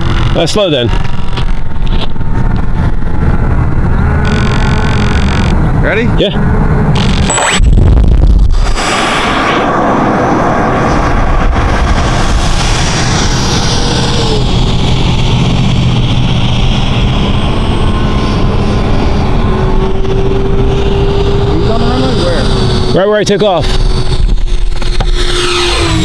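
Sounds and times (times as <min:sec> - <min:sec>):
electric jet fan whining: 0:00.0 - 0:26.0
rush of air: 0:07.2 - 0:21.5.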